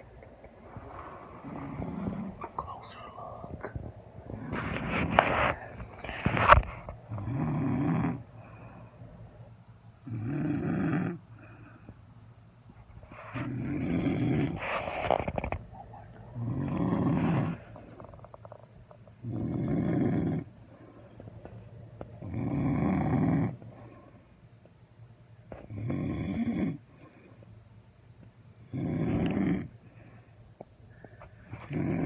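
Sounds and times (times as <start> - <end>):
woman snoring: 0.7 - 3.4, 7.1 - 8.8, 10.0 - 11.6, 13.4 - 14.6, 16.4 - 18.3, 19.2 - 20.5, 22.2 - 23.6, 25.7 - 26.8, 28.7 - 29.7, 31.6 - 32.0.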